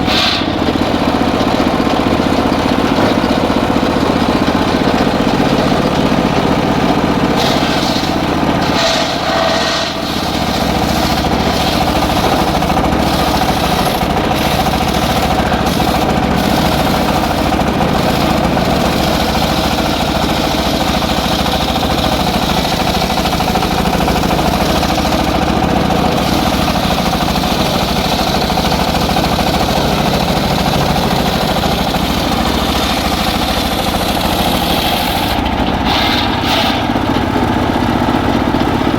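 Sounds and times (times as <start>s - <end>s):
circular sawmill running: 0.0s - 38.9s.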